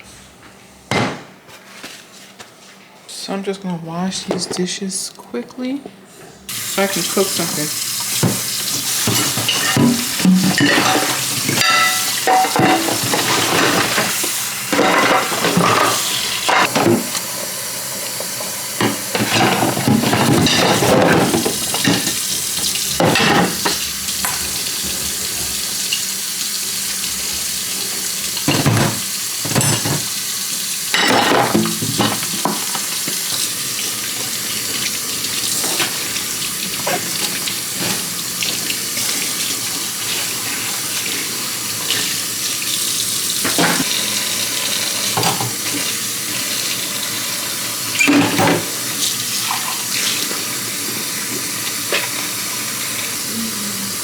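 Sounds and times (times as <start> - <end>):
tap running into a sink: 7.9 - 26.1, 26.8 - 47.2
dishes clattering: 8.1 - 17.2, 18.8 - 25.6, 28.3 - 30.2, 30.9 - 33.4, 35.6 - 38.1, 43.4 - 44.0, 45.0 - 46.0, 48.0 - 48.8.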